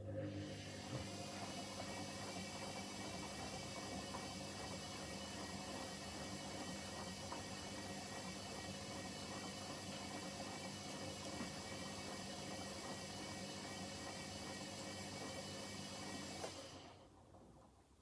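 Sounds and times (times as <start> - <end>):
washing machine humming: 0.0 - 18.0.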